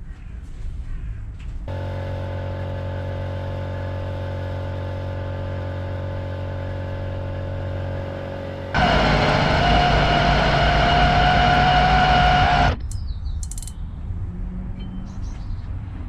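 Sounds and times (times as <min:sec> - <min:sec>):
loud rough noise: 0:01.7 - 0:12.8
metal lathe humming: 0:01.7 - 0:12.8.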